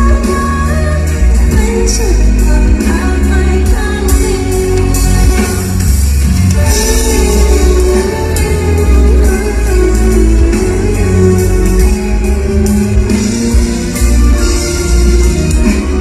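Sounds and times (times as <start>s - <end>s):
woman singing pop song: 0.0s - 5.9s
bass line: 0.0s - 16.0s
steady drums: 0.0s - 16.0s.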